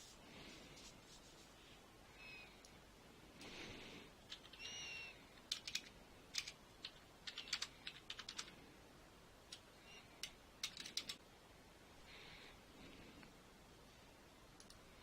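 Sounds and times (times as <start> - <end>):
keyboard keys clicking: 5.4 - 8.5, 10.2 - 11.2.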